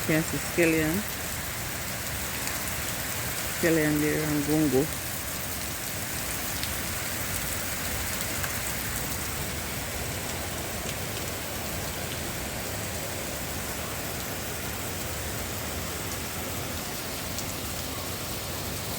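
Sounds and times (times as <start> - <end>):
rain falling steadily: 0.0 - 18.9
rain drop ticks: 6.2 - 9.2, 10.2 - 12.6.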